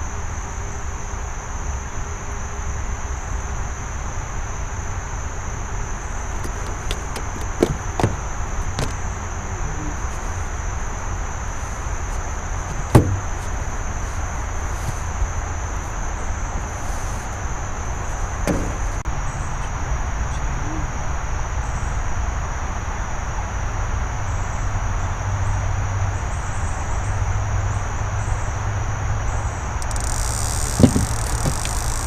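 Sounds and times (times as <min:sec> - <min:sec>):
night insects chorus: 0:00.0 - 0:32.0
knock: 0:06.4 - 0:08.2, 0:08.8 - 0:09.0, 0:12.8 - 0:13.3, 0:30.8 - 0:31.6.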